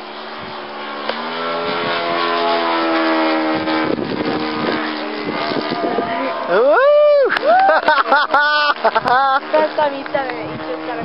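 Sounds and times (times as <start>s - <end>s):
model plane motor whine: 0.0s - 11.0s.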